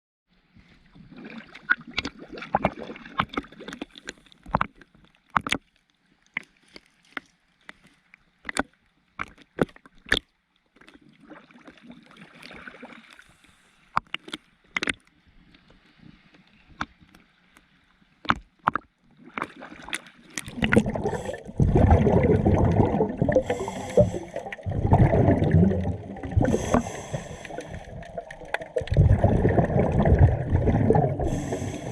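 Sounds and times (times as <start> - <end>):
underwater bubbles gurgling: 0.9 - 4.8, 18.7 - 31.9.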